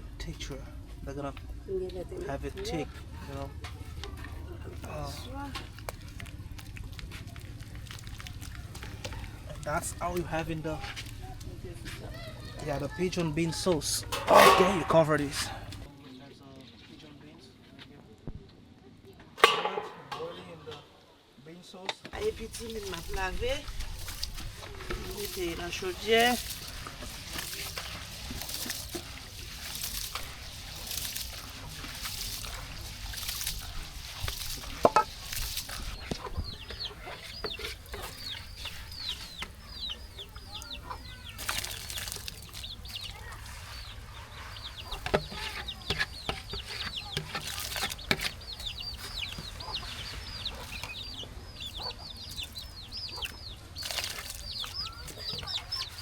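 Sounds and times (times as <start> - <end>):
chicks peeping: 29.7 - 56.0.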